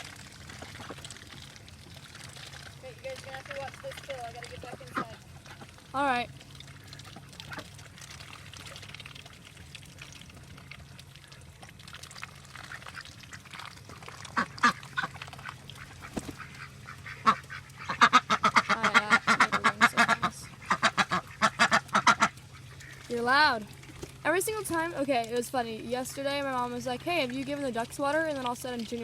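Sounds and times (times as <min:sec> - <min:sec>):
ducks quacking: 0:03.0 - 0:07.7, 0:12.7 - 0:23.1.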